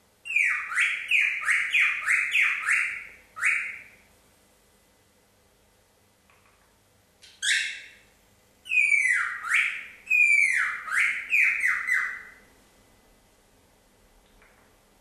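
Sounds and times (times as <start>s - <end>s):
cockatiel whistling calls: 0.3s - 3.9s, 7.3s - 8.0s, 8.7s - 12.4s.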